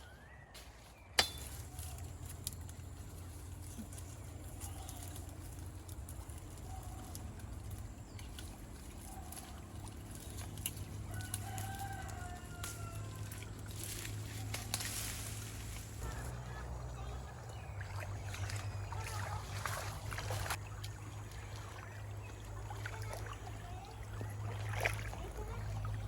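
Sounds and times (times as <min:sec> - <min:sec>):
rooster crowing: 0:11.0 - 0:13.4.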